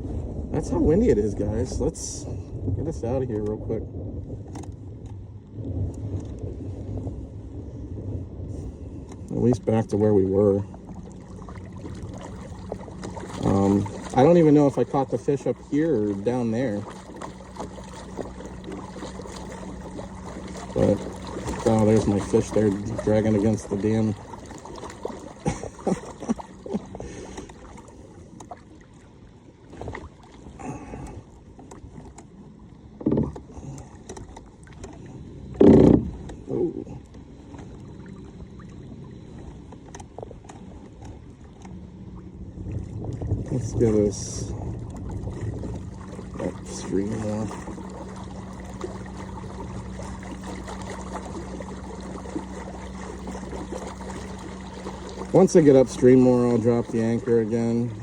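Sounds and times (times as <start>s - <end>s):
steady low hum: 0.0s - 58.0s
water splashing against a kayak: 0.0s - 58.0s
paddle knocking on plastic hull: 33.0s - 36.4s
thump on kayak: 33.0s - 36.4s.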